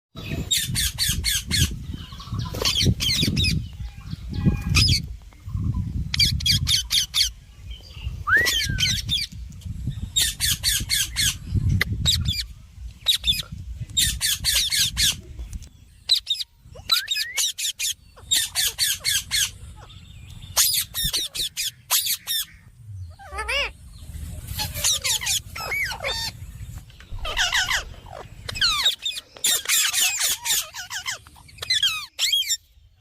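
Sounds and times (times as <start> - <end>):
parakeet squawking: 16.1 - 20.0, 20.6 - 23.8, 24.6 - 26.4, 27.2 - 32.6
low rumble: 22.5 - 28.8.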